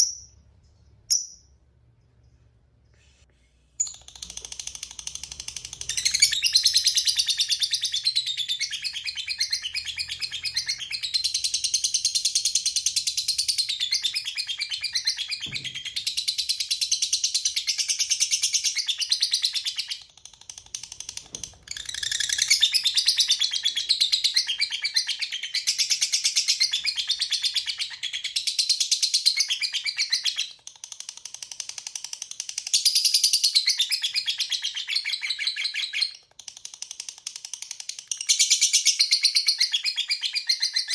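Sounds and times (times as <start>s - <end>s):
lovebird chattering: 3.8s - 12.3s.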